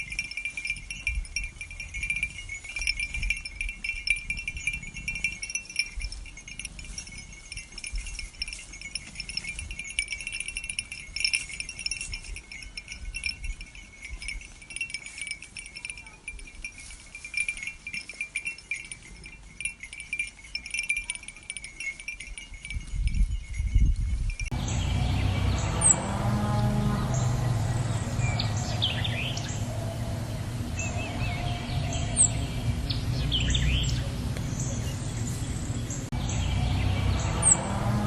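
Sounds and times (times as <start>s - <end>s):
small metal bells jangling: 0.0s - 38.0s
low rumble: 24.5s - 38.0s.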